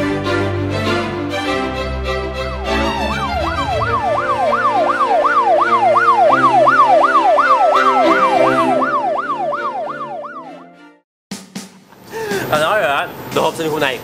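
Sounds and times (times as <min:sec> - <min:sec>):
background music: 0:00.0 - 0:12.6
emergency siren yelping: 0:02.6 - 0:10.8.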